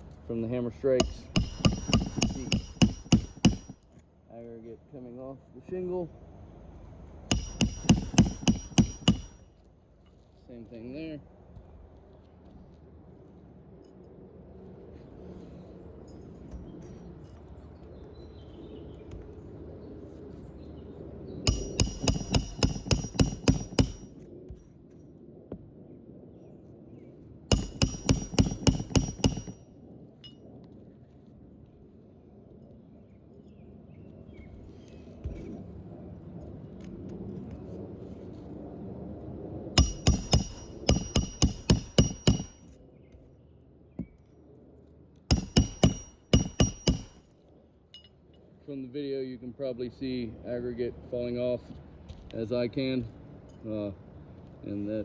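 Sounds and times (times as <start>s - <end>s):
hammer striking roofing nail: 1.0s - 3.8s, 7.3s - 9.4s, 21.5s - 24.1s, 27.5s - 29.6s, 39.8s - 42.7s, 45.3s - 47.2s.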